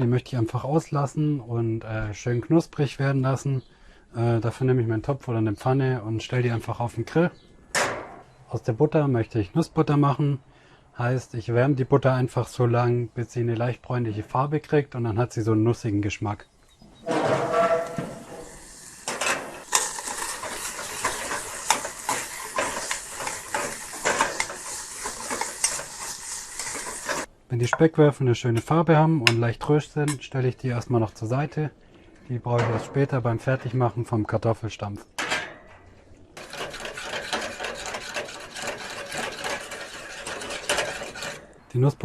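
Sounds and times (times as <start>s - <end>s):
utensil scraping a pan: 17.0s - 27.3s, 36.4s - 41.6s
bacon sizzling in a pan: 18.4s - 27.3s.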